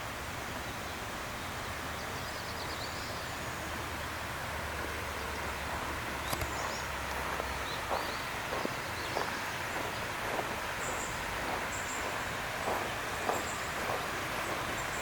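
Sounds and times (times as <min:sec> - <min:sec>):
steady hiss: 0:00.0 - 0:15.0
small birds chirping: 0:00.9 - 0:03.8, 0:04.7 - 0:15.0
sharp click: 0:06.2 - 0:06.6
light ticks: 0:06.2 - 0:07.2.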